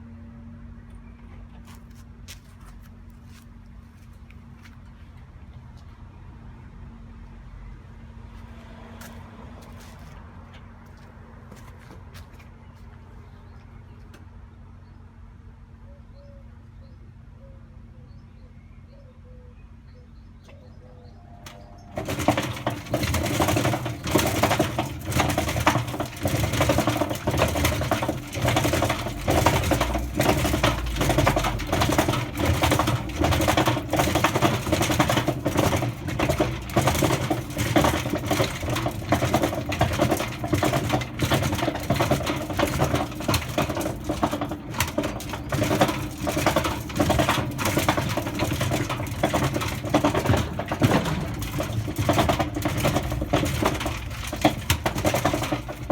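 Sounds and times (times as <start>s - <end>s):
washing machine hum: 20.5s - 55.9s
drum bearings rumbling: 21.0s - 55.9s
toy clattering in spinning drum: 21.4s - 55.9s.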